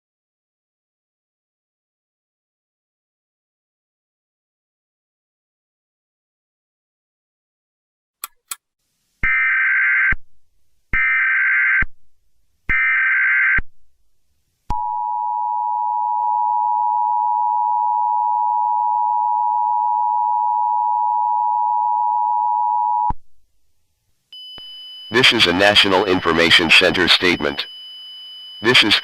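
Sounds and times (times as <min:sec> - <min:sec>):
two-tone attention signal: 0:24.4 - 0:27.8, 0:28.5 - 0:29.0
shrill data tone bursts: 0:24.4 - 0:29.0.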